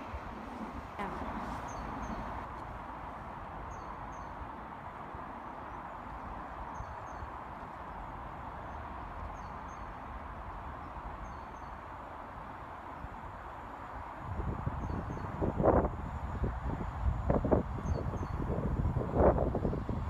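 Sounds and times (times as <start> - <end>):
background rumble and hiss: 0.0 - 6.4.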